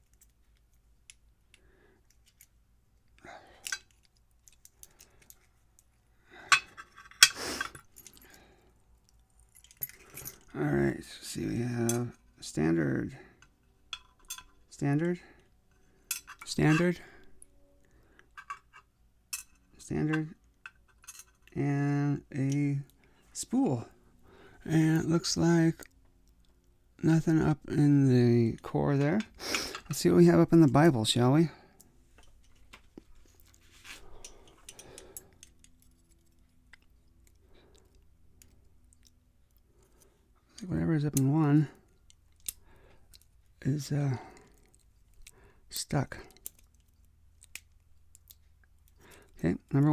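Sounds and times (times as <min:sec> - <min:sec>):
metal lock pins clinking: 0:02.1 - 0:08.4, 0:09.0 - 0:10.6, 0:13.4 - 0:15.1, 0:16.1 - 0:17.2, 0:18.4 - 0:21.6, 0:42.0 - 0:43.4
small tool scraping in a lock: 0:15.8 - 0:17.0, 0:18.2 - 0:19.6.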